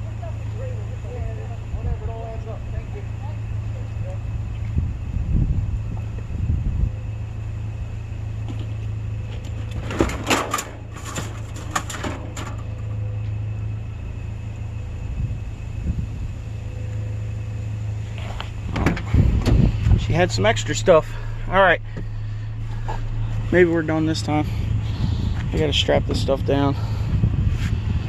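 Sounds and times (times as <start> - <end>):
truck engine idling: 0.0 - 28.0
clattering metal knocks: 9.4 - 13.0.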